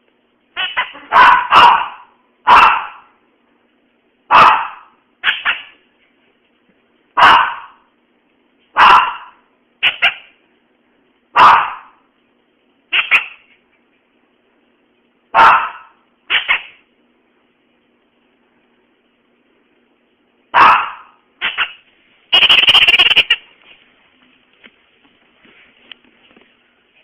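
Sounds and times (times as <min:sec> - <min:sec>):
small dog barking sharply: 0:00.6 - 0:03.1, 0:04.3 - 0:05.7, 0:07.2 - 0:07.8, 0:08.8 - 0:10.3, 0:11.4 - 0:12.0, 0:15.4 - 0:16.7, 0:20.6 - 0:21.7.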